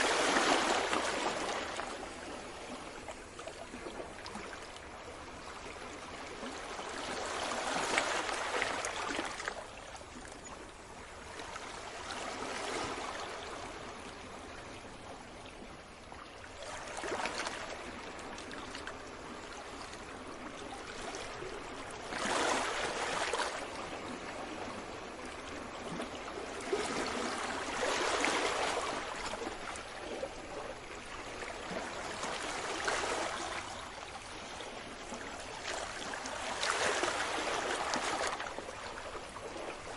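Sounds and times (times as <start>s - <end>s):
sea waves washing in: 0.0s - 4.6s.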